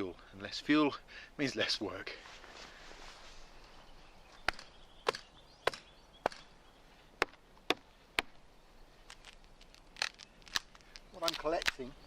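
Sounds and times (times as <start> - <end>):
wood being chopped: 4.4 - 6.5, 7.2 - 8.4.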